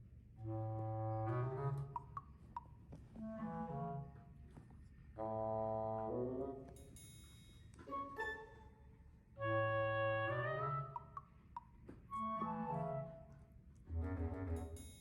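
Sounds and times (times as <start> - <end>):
instrumental background music: 12.1 - 13.3.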